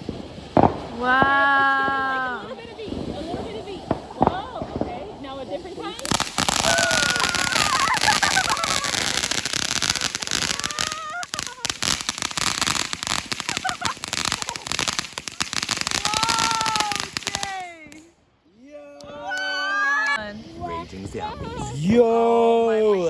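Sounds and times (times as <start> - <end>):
fireworks crackling: 0.0 - 22.1.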